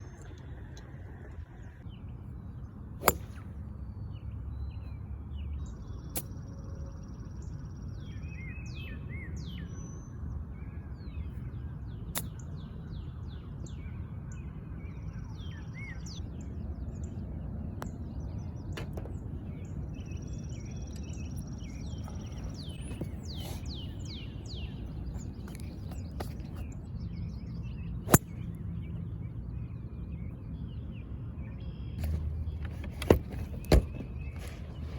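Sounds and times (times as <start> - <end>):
low outdoor rumble: 0.0 - 7.9
birds singing: 0.0 - 34.9
golf clubs striking balls: 3.0 - 3.5, 25.1 - 26.8, 32.0 - 34.9.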